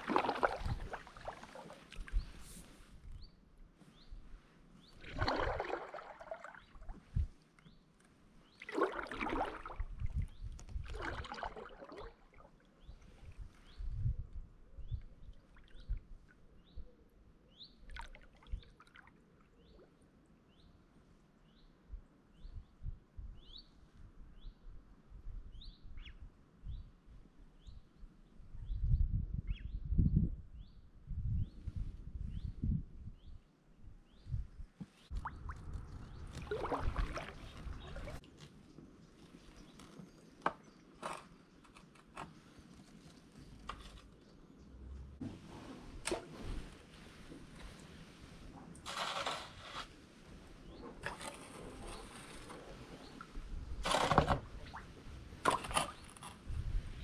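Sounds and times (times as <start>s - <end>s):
water dripping from paddle: 0.0s - 2.2s, 7.6s - 12.6s, 35.1s - 38.5s
water swish from paddle: 0.0s - 3.1s, 4.8s - 7.4s, 8.5s - 13.4s, 34.9s - 38.6s, 45.2s - 57.0s
dull thuds of kayak paddling: 53.8s - 55.9s.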